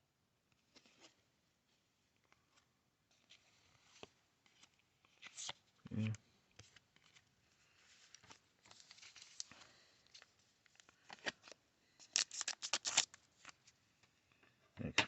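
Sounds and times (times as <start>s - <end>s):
paper cards rustling: 2.2s - 13.8s
cards snapping while flipped: 12.2s - 13.2s.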